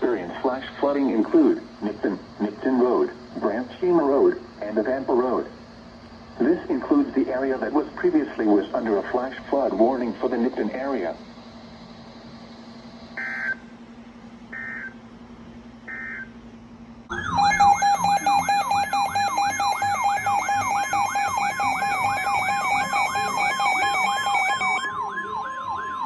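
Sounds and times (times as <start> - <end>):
short electronic data bursts: 17.1 - 24.9
siren-like alert tone: 17.1 - 26.0.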